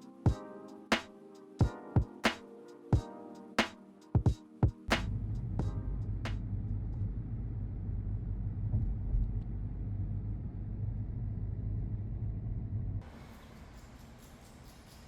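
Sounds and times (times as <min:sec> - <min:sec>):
low rumble of running machinery: 0:05.1 - 0:13.0.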